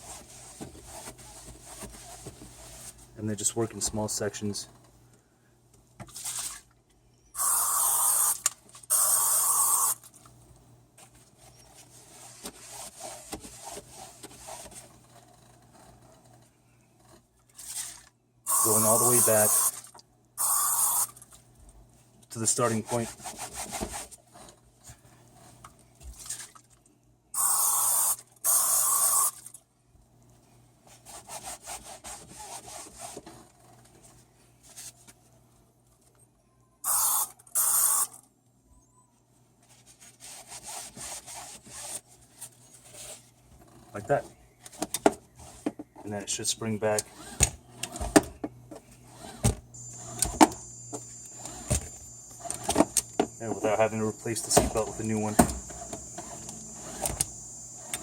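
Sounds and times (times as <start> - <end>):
towel rubbing on webbing: 0.0 - 3.2, 11.8 - 14.8, 30.9 - 33.2, 39.8 - 42.1
aerosol can hissing: 7.4 - 10.0, 18.5 - 19.7, 27.4 - 29.3, 36.9 - 38.1.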